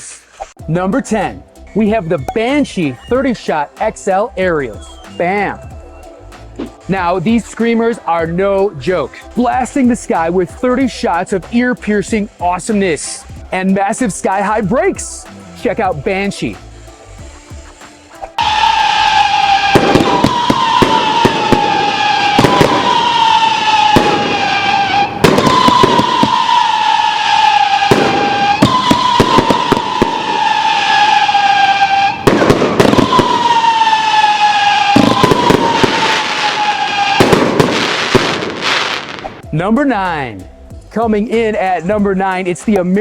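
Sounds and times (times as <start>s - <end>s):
firework whistles: 4.6s - 6.9s, 18.2s - 39.5s
firework shells bangs: 18.4s - 39.4s.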